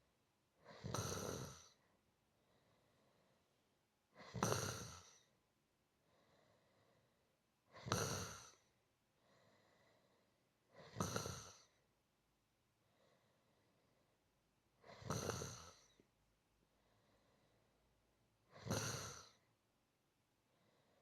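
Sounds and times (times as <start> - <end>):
person snoring: 0.6 - 1.8, 4.2 - 5.3, 7.7 - 8.7, 10.8 - 11.8, 14.8 - 16.0, 18.5 - 19.4
soft breaths: 0.6 - 7.4, 8.5 - 11.9, 12.8 - 18.0, 20.3 - 21.0.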